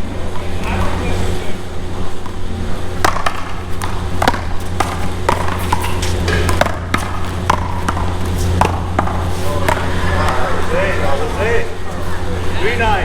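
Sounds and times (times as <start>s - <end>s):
ball struck by paddles: 2.2s - 10.8s
ball bouncing off wall: 3.0s - 10.4s.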